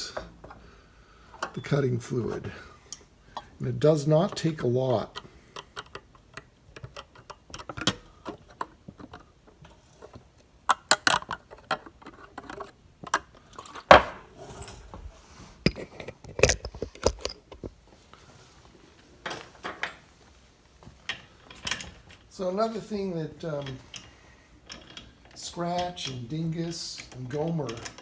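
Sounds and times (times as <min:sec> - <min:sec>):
metal hand tools clinking: 0:21.5 - 0:28.0.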